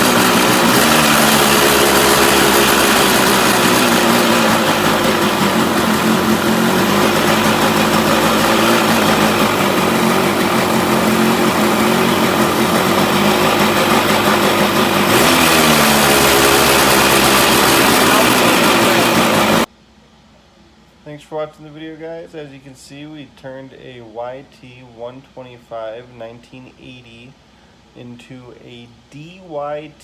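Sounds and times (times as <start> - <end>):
two-stroke engine revving: 0.0 - 19.7.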